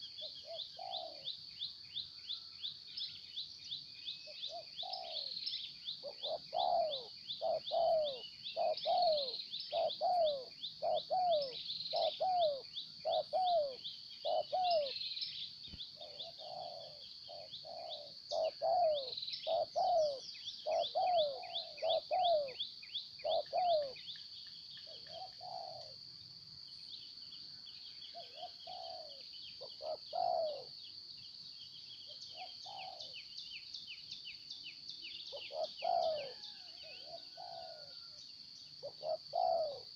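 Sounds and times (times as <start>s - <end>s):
doves cooing: 0.0s - 1.3s, 4.5s - 5.3s, 6.0s - 15.0s, 16.0s - 22.6s, 23.2s - 24.0s, 24.9s - 26.0s, 28.2s - 30.7s, 32.4s - 33.2s, 35.3s - 38.2s, 38.8s - 39.9s.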